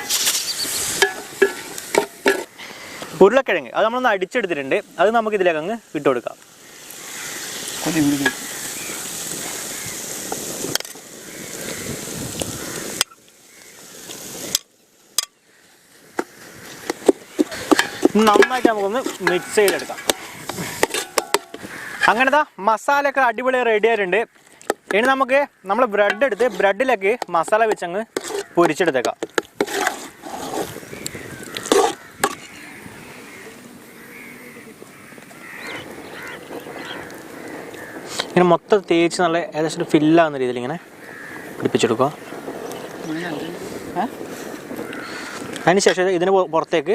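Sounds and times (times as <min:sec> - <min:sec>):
masala sizzling in a pan: 0:00.0 - 0:46.9
spoon knocking: 0:01.0 - 0:02.5, 0:17.0 - 0:22.2, 0:26.0 - 0:26.6, 0:27.2 - 0:30.1.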